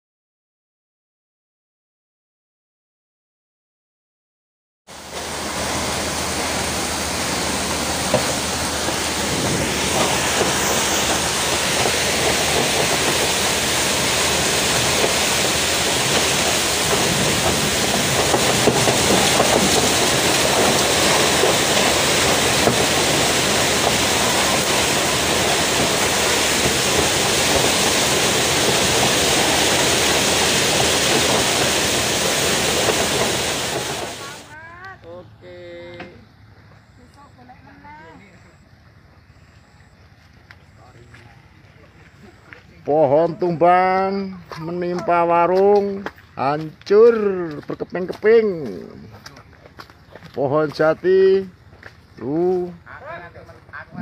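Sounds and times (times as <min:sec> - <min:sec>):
heavy rain: 0:04.9 - 0:34.6
strong wind: 0:05.0 - 0:34.5.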